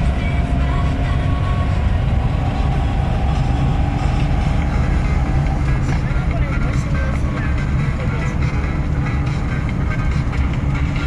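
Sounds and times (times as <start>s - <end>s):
car engine and road rumble: 0.0s - 11.0s.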